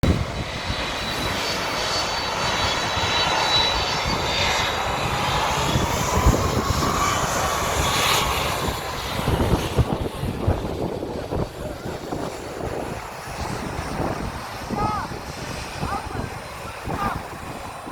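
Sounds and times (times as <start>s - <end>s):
airplane engines roaring with whine: 0.0s - 17.9s.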